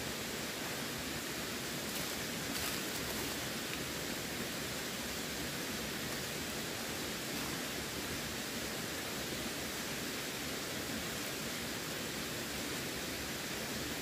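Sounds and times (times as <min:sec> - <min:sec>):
water rushing: 0:00.0 - 0:14.0.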